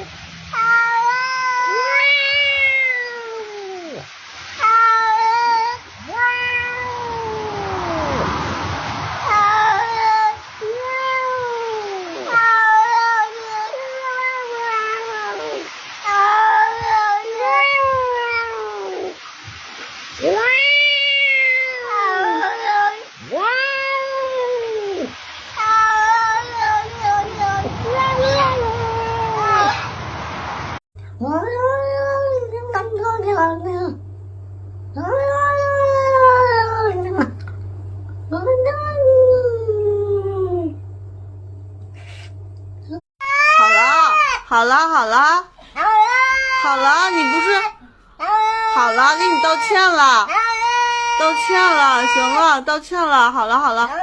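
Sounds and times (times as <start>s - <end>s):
cat meowing: 0.0s - 8.3s, 9.2s - 19.2s, 20.2s - 29.9s, 43.2s - 44.5s, 45.8s - 52.6s
second cat meowing: 0.5s - 8.4s, 9.2s - 19.2s, 20.2s - 29.9s.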